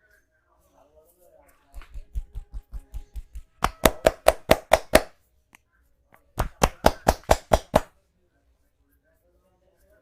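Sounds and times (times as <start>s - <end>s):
sharp hand slaps: 1.7s - 5.2s, 6.4s - 7.9s.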